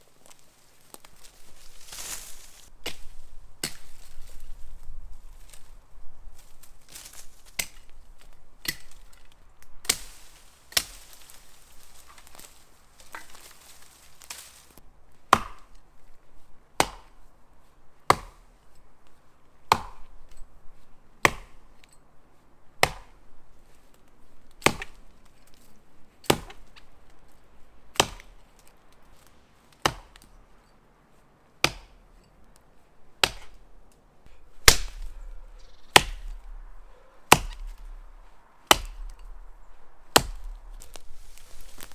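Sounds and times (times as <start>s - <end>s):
axe chopping tree trunk: 1.8s - 4.6s, 6.4s - 14.6s, 15.2s - 15.8s, 16.7s - 17.3s, 18.1s - 18.7s, 19.7s - 20.5s, 21.2s - 21.9s, 22.8s - 23.3s, 24.6s - 25.4s, 26.2s - 27.0s, 27.9s - 30.4s, 31.6s - 32.3s, 33.2s - 33.7s, 34.3s - 41.9s.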